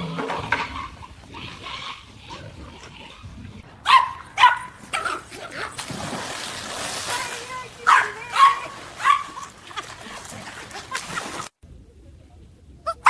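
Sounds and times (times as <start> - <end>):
dog barking: 3.8 - 5.8, 7.8 - 9.5.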